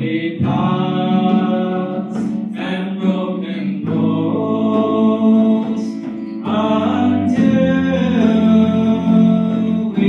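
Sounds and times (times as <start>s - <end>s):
group singing slow song: 0.0s - 10.0s.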